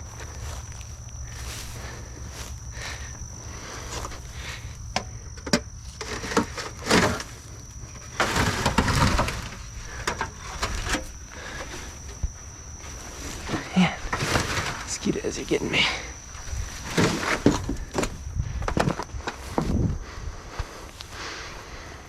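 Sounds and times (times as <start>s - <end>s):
footsteps in dry brush: 0.0s - 4.9s
crackling rustle: 0.0s - 22.0s
high insect buzz: 0.0s - 22.0s.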